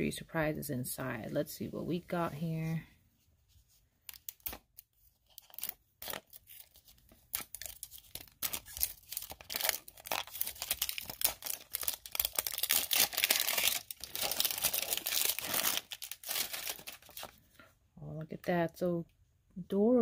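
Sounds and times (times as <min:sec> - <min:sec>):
plastic wrapping crinkling: 0:04.0 - 0:17.4.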